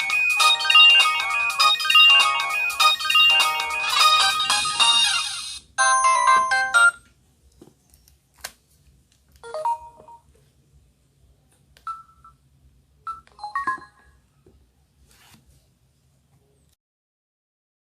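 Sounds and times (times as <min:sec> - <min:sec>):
polyphonic phone ringtone melody: 0:00.0 - 0:07.0, 0:09.4 - 0:10.2.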